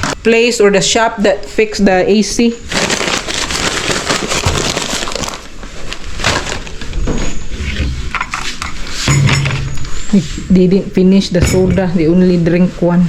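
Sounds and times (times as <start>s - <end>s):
cups and bottles crinkling: 2.7s - 6.9s.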